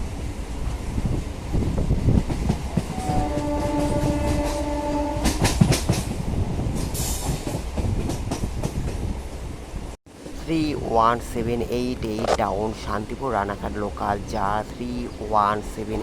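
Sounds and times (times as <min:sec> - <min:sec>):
electric train running on rails: 0:00.0 - 0:16.0
wheels clacking over rail joints: 0:02.1 - 0:09.1
train horn: 0:02.8 - 0:05.6.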